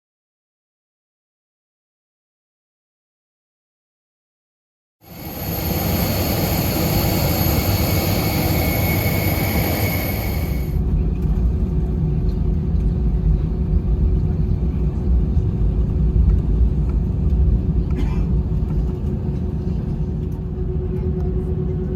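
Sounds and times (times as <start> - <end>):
high engine whine: 5.0 - 11.4
low engine and airframe rumble: 5.0 - 21.9.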